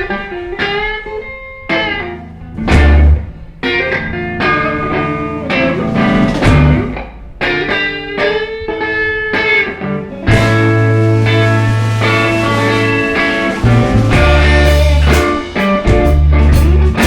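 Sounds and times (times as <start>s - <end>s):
electric guitar riff: 0.0s - 17.0s
deep bass notes: 2.2s - 7.7s, 10.3s - 17.0s.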